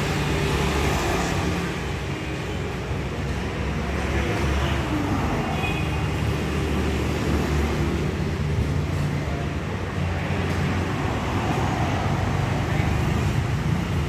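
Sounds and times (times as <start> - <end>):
vehicles passing on street: 0.0 - 14.0.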